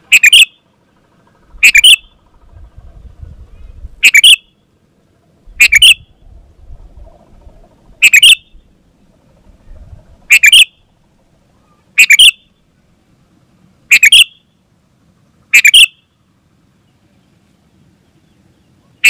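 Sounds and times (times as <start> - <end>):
bird chattering calls: 0.0 - 4.6, 5.5 - 6.3, 6.9 - 10.9, 11.5 - 12.6, 13.9 - 14.5, 15.5 - 16.1.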